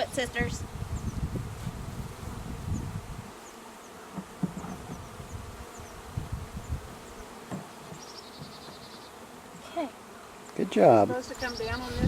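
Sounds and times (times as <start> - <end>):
bees buzzing: 0.0 - 12.0.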